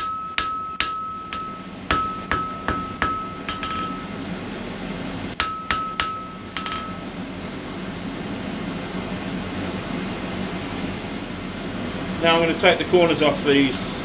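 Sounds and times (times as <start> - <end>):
anvil ringing: 0.0 - 4.2, 5.4 - 7.2
hammer striking steel on anvil: 0.0 - 4.2, 5.4 - 7.2.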